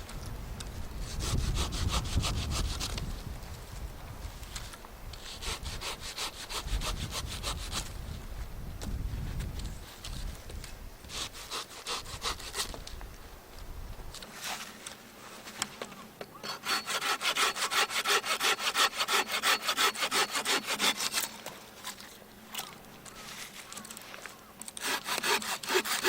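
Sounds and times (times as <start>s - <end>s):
hand saw cutting wood: 1.0s - 3.0s, 5.2s - 7.9s, 11.1s - 12.8s, 16.3s - 22.0s, 24.7s - 26.0s.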